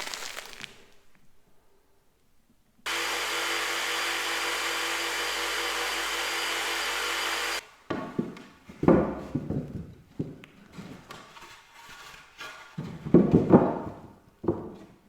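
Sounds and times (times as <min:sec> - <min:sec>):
power tool motor running: 0:02.9 - 0:07.6.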